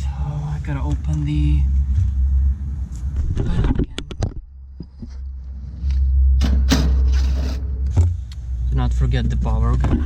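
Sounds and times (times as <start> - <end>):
low rumble: 0.0 - 10.0.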